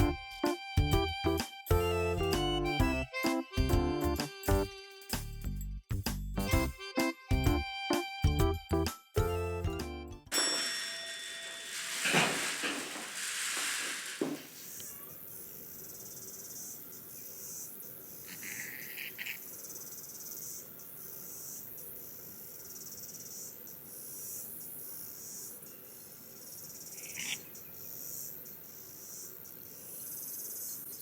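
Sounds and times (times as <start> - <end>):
insects chirring: 11.4 - 31.0
low insect chirps: 14.6 - 31.0.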